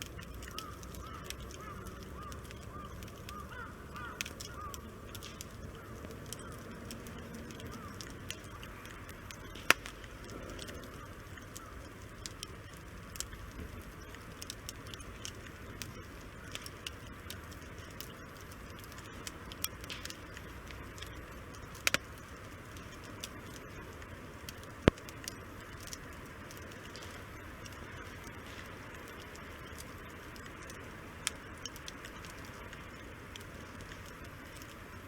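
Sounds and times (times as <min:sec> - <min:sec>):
firewood crackling and popping: 0:00.0 - 0:35.0
low hiss of flames: 0:00.0 - 0:35.0
loud wood snap: 0:09.5 - 0:10.7.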